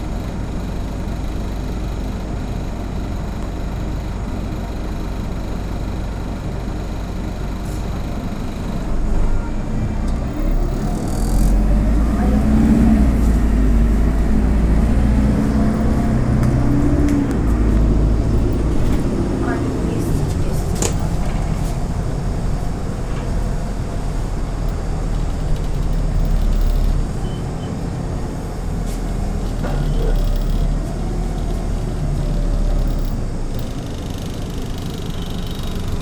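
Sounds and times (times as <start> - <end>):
bus diesel engine: 0.0 - 36.0.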